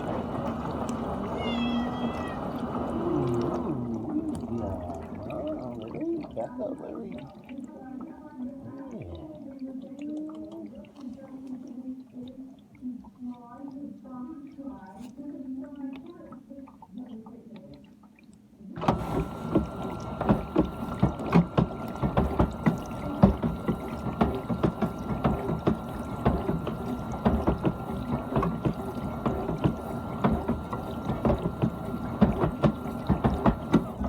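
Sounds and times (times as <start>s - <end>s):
water spraying inside dishwasher: 0.0s - 17.8s, 18.8s - 34.0s
steady motor whine: 18.8s - 34.0s.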